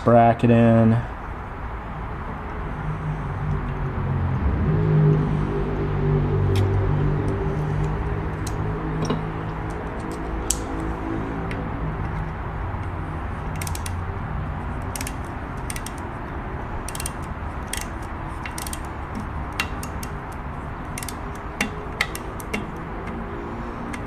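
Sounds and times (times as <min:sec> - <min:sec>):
screwdriver clicking on metal: 0:12.8 - 0:14.0, 0:14.8 - 0:16.1, 0:16.8 - 0:23.2.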